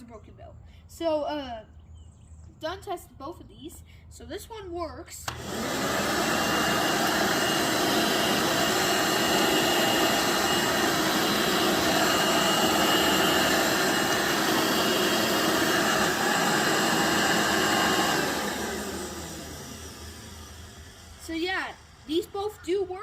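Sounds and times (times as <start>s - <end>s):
motor winding down: 5.2s - 22.6s
vacuum cleaner whining: 5.2s - 22.8s.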